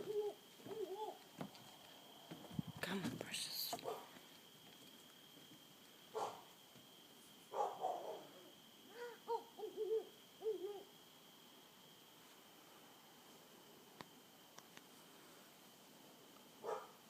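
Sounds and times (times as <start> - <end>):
owl hooting: 0.0 - 1.2, 7.6 - 11.0
rustle: 0.0 - 17.0.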